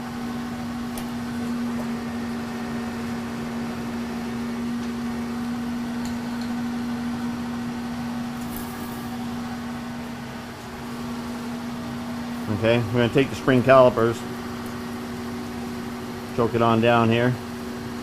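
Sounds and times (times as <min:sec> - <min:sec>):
milling machine humming: 0:00.0 - 0:18.0.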